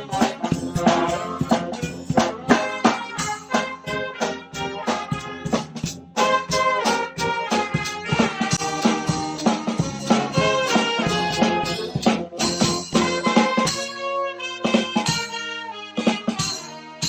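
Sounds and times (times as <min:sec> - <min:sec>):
drum beat: 0:00.0 - 0:14.0
blaring brass: 0:00.0 - 0:17.0.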